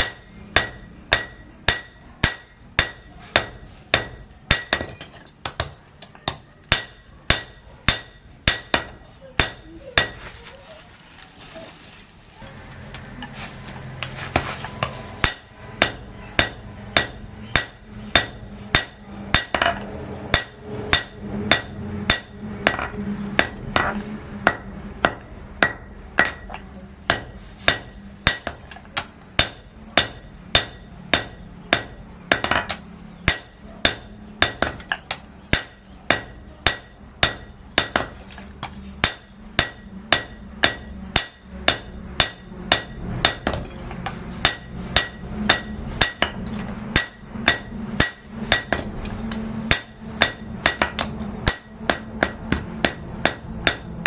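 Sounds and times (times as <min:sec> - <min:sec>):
hammer ringing on anvil: 0:00.0 - 0:05.2, 0:14.6 - 0:28.6, 0:29.4 - 0:34.9, 0:39.0 - 0:43.6, 0:44.4 - 0:48.9, 0:49.7 - 0:54.0.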